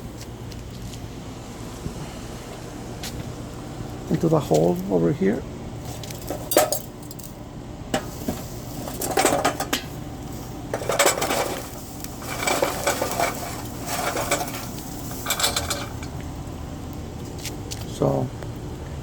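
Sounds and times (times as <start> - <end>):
charcoal clinking and rattling: 5.8 - 7.4, 8.0 - 16.7.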